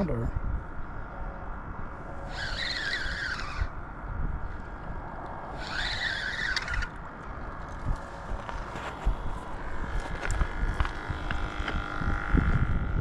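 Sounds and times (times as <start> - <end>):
steady low rumble: 0.0 - 13.0
fishing reel whirring: 2.1 - 4.1, 5.4 - 7.6.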